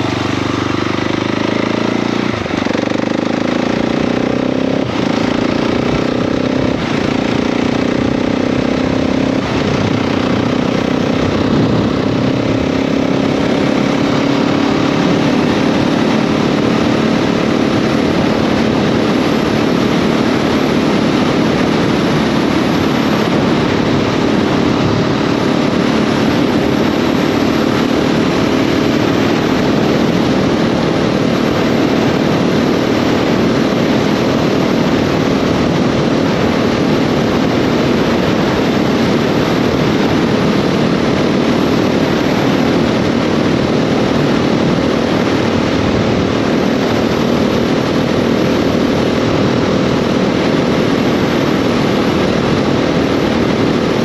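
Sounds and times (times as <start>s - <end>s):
motorcycle engine running: 0.0s - 54.0s
wind noise: 0.0s - 54.0s.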